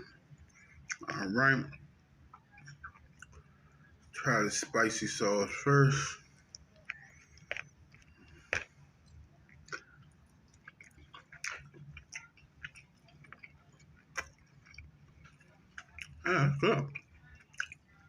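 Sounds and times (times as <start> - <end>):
quiet chewing: 0.0 - 4.2, 6.2 - 18.0
mouth clicks and smacks: 16.9 - 17.8.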